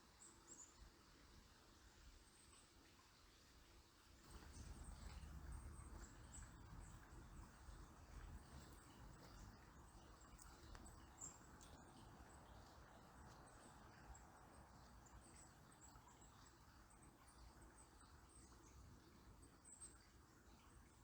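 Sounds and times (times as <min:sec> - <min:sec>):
river babbling: 0:04.2 - 0:20.4.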